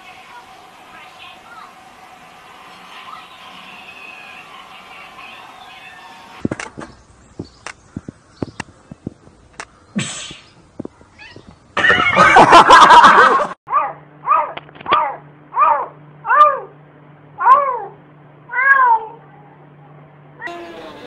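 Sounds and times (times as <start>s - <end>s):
cat meowing: 18.5s - 19.2s.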